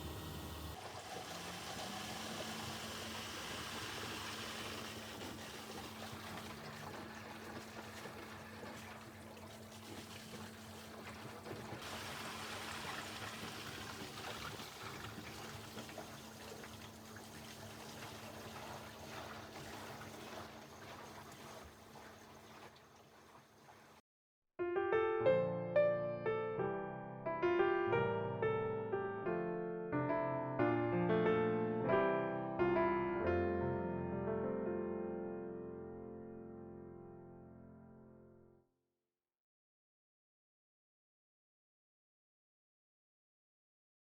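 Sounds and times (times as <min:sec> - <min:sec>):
washing machine running: 0:00.0 - 0:24.0
water trickling and splashing: 0:00.0 - 0:24.0.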